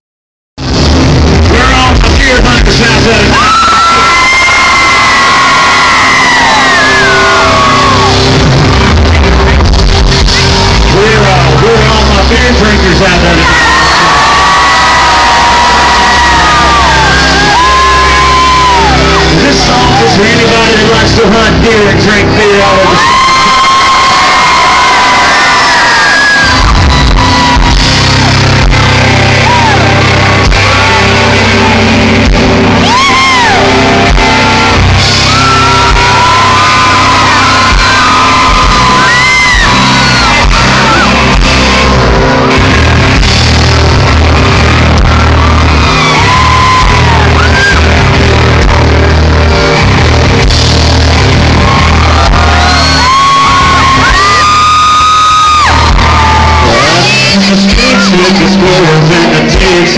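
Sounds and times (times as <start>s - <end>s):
live country-rock band playing: 0.6s - 59.9s
fans whooping and shouting: 0.7s - 59.9s.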